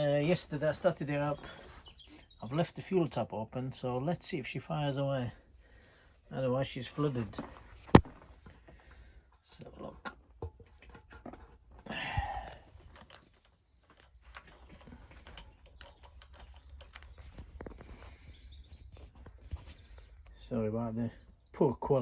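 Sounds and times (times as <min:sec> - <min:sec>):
faint bird chirps: 0:13.6 - 0:21.8.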